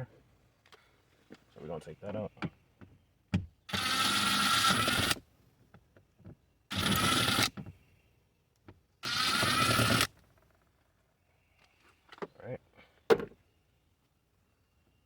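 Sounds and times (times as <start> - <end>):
power tool spinning a bolt: 3.7 - 5.2, 6.7 - 7.6, 9.0 - 10.1.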